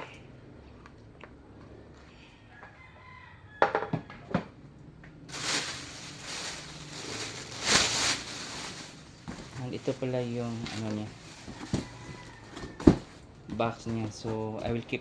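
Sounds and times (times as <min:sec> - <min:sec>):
rooster crowing: 0:02.4 - 0:04.6, 0:11.4 - 0:13.2
packaging rustling: 0:05.3 - 0:14.4.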